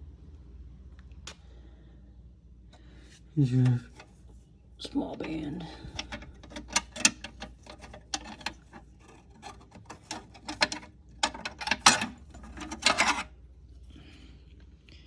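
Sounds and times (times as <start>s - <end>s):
metal parts clicking and knocking: 5.2s - 13.3s.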